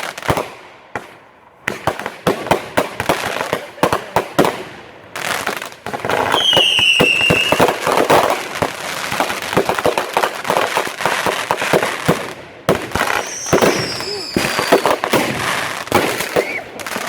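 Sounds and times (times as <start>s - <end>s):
fireworks bangs and crackling: 0.0s - 17.0s
whistling firework: 6.0s - 9.9s, 11.6s - 17.0s.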